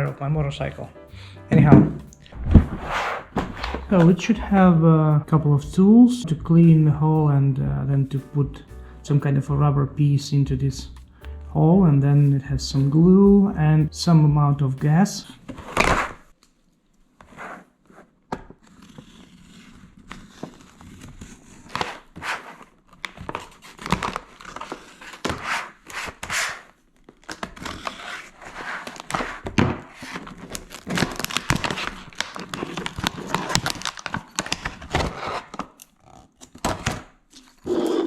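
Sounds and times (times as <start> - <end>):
packaging crinkling and tearing: 18.6 - 37.7.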